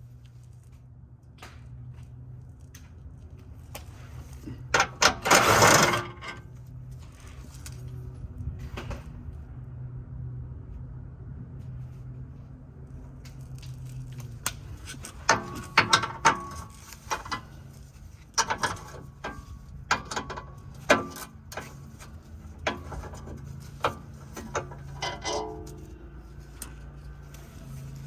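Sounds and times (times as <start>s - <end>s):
metallic clanks: 4.5s - 6.5s, 14.8s - 17.7s, 18.3s - 27.2s.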